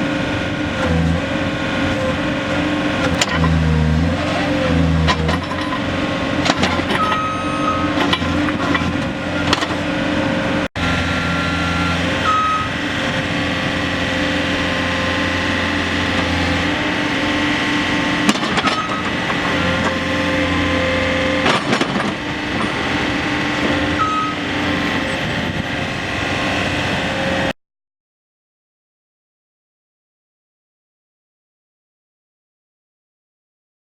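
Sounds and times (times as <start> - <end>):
diesel engine running: 0.0 - 27.6
metal clanks: 5.0 - 9.8, 21.4 - 22.9
short high-pitched tones: 10.9 - 12.8.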